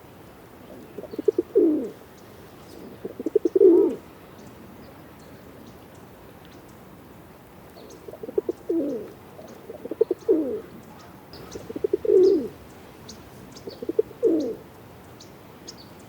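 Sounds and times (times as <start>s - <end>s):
pigeon cooing: 0.7s - 2.0s, 2.8s - 4.0s, 8.1s - 10.8s, 11.4s - 12.6s, 13.6s - 14.6s.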